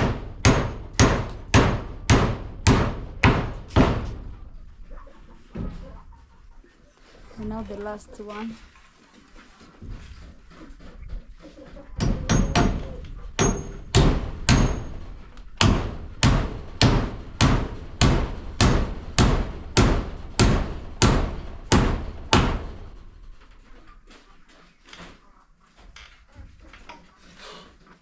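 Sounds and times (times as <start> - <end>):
hammer driving a nail: 0.0 - 4.2, 12.0 - 15.0, 15.6 - 22.8.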